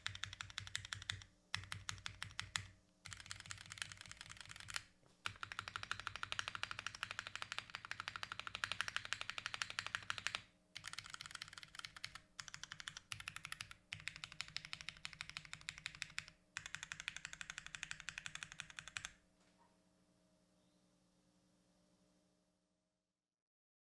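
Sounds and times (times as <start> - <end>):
fast mechanical keyboard typing: 0.0 - 19.2.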